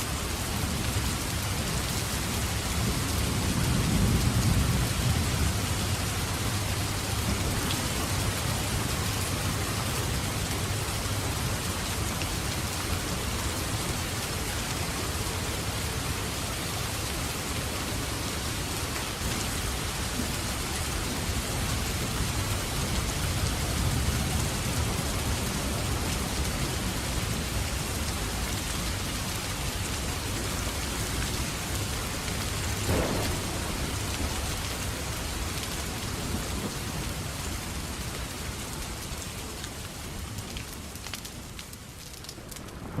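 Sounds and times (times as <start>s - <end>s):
heavy rain falling: 0.0s - 43.0s
low thunder rumbling: 2.4s - 10.7s, 30.8s - 38.0s, 42.4s - 43.0s
wood fire crackling: 32.6s - 36.1s, 38.7s - 43.0s.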